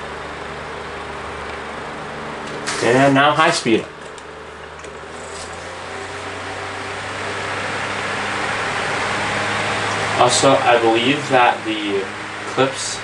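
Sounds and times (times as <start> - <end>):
fan air rushing: 0.0 - 13.0
low motor hum: 0.0 - 13.0.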